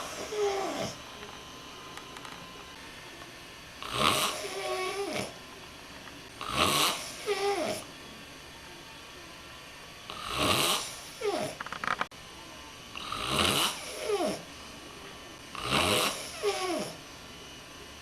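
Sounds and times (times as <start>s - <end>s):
man snoring: 0.0s - 1.0s, 3.8s - 5.4s, 6.4s - 7.9s, 10.1s - 11.6s, 13.0s - 14.5s, 15.5s - 17.0s.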